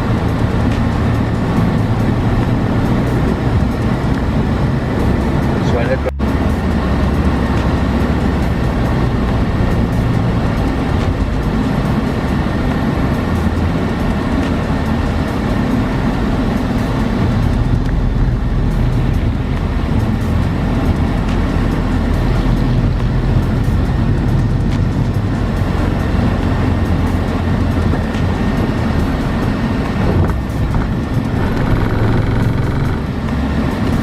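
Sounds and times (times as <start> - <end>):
vehicle engine and road noise: 0.0 - 34.0.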